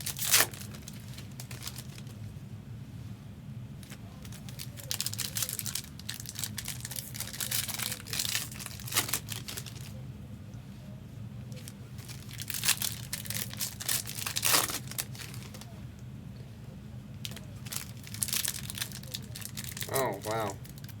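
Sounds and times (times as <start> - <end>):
card pack wrappers tearing: 0.0 - 2.1, 3.8 - 9.9, 12.0 - 15.7, 17.3 - 21.0.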